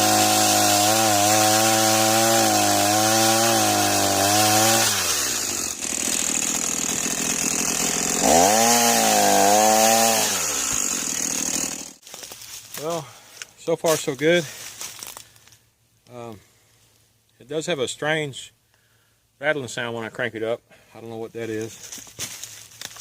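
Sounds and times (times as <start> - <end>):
two-stroke chainsaw revving and idling: 0.0 - 12.0.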